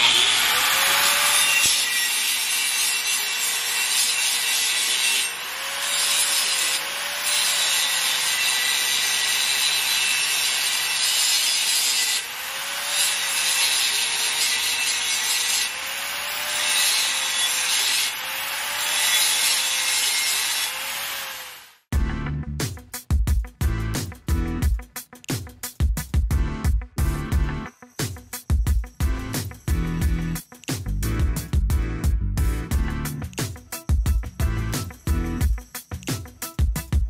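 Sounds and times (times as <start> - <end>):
angle grinder grinding steel: 0.0 - 21.8, 33.0 - 36.4.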